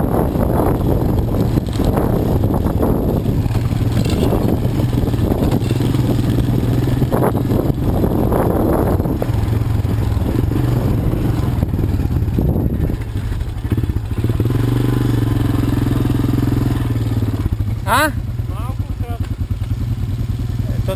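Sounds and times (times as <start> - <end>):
atv engine running: 0.0 - 20.9
noisy clatter: 0.3 - 14.6.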